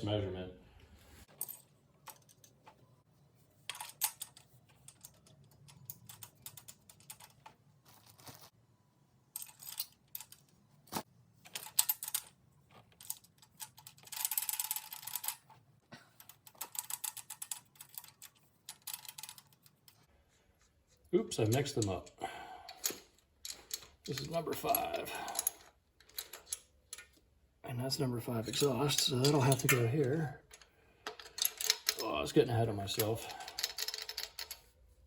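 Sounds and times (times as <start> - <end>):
metal tools clinking: 21.4 - 27.2, 28.5 - 34.7.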